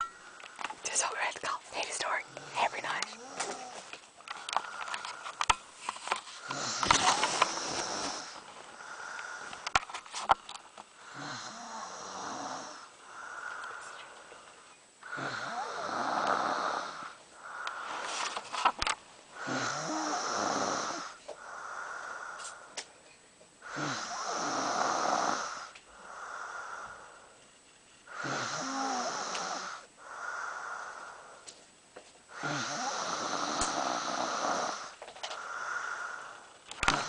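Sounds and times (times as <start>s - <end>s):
person snoring: 2.0s - 5.3s, 6.4s - 9.8s, 11.0s - 14.0s, 15.0s - 18.2s, 19.4s - 22.8s, 23.6s - 27.2s, 28.1s - 31.4s, 32.3s - 37.0s.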